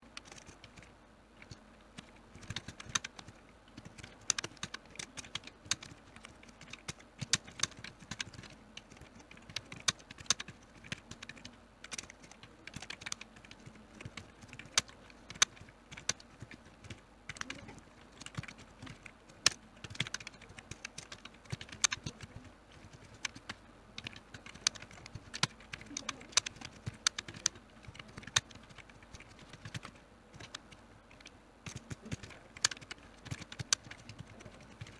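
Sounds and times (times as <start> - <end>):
keyboard typing: 0.0 - 34.9.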